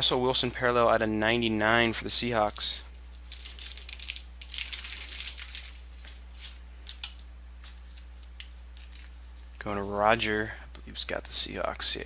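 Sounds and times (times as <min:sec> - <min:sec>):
card packaging crinkling: 0:02.4 - 0:09.6.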